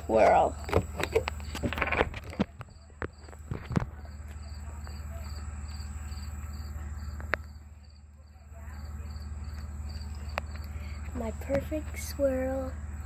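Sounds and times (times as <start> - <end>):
steady low hum: 0.0 - 13.0
cricket chirping: 2.6 - 11.1.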